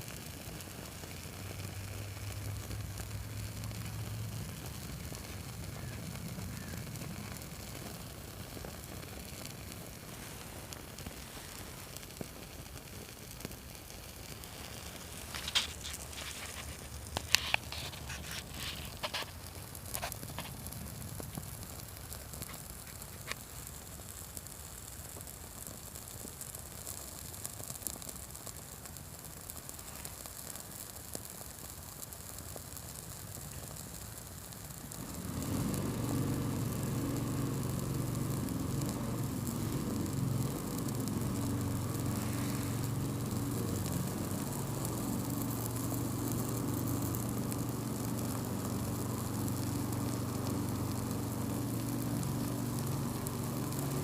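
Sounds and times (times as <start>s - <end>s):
burning crackers crackling: 0.0s - 54.0s
low fire hiss: 0.0s - 54.0s
sharp pops: 0.6s - 24.2s.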